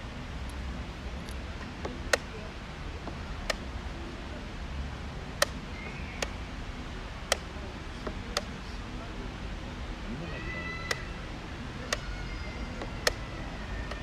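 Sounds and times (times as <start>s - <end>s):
sharp hard clicks: 5.3s - 6.4s, 7.2s - 8.6s, 10.8s - 11.2s, 11.8s - 14.0s.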